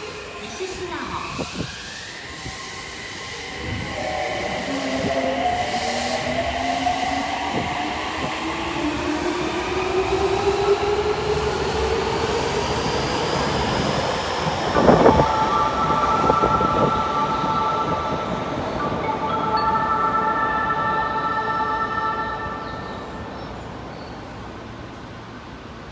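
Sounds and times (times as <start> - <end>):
subway train motors whining: 0.0 - 25.9
platform door electronic chime: 3.9 - 8.1.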